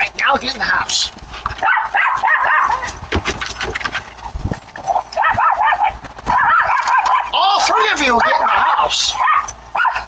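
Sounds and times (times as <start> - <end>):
dog whining and yipping: 1.6 - 3.0, 4.2 - 7.3, 8.2 - 10.0.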